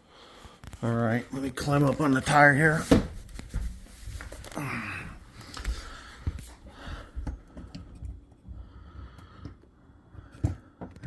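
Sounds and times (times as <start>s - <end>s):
person breathing hard: 0.0s - 0.8s, 4.4s - 11.0s.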